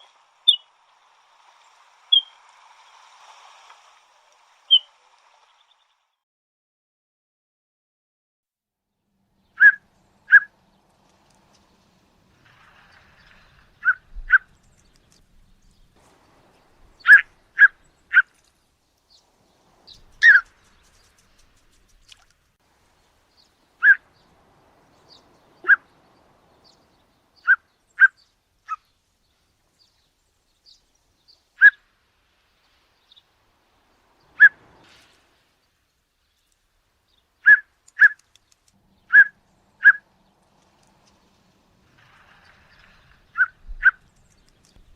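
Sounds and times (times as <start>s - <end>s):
shorebird call notes: 2.1s - 2.4s, 9.6s - 10.6s, 17.0s - 18.4s, 19.8s - 20.6s, 23.8s - 24.1s, 25.6s - 26.0s, 37.4s - 38.2s, 39.0s - 40.1s.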